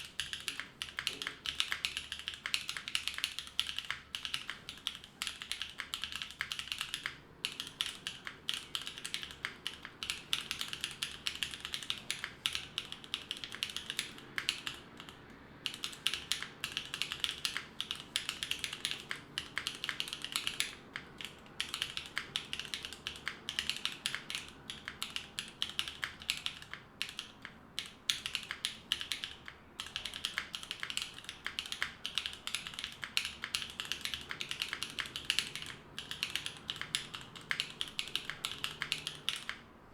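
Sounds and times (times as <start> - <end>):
fast typing on mechanical keyboard: 0.0 - 39.7.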